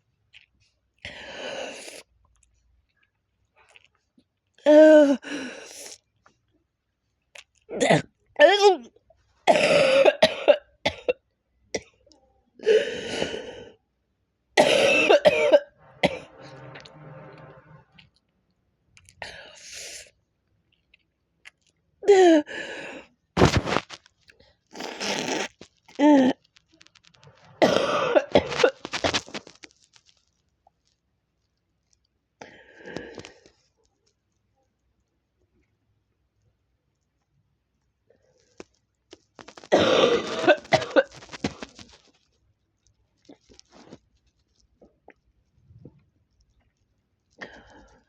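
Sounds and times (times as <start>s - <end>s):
person coughing hard: 9.5s - 11.1s, 14.6s - 16.3s, 27.6s - 28.8s, 39.8s - 41.2s.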